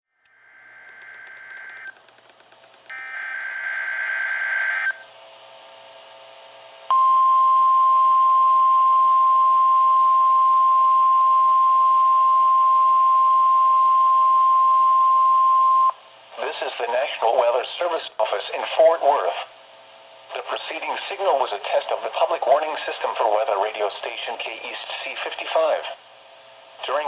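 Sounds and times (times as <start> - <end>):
steady alarm tone: 2.9 - 5.0.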